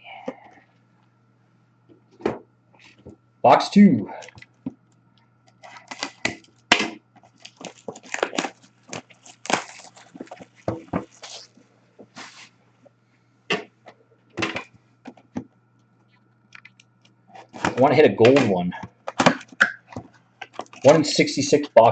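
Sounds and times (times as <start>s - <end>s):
cardboard box tearing and rustling: 7.5s - 10.5s.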